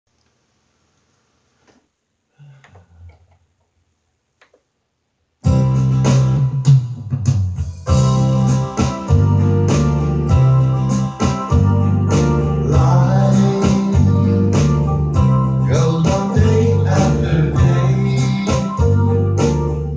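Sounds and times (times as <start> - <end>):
electronic keyboard music with drums: 5.5 - 19.9.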